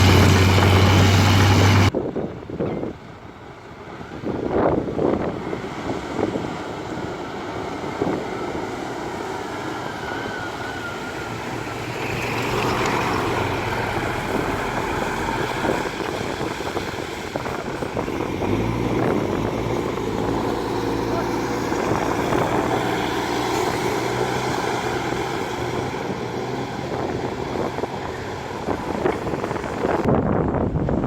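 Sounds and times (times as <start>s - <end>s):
deeper engine note: 0.0s - 1.9s, 10.5s - 30.7s
heavy diesel engines under load: 0.0s - 31.0s.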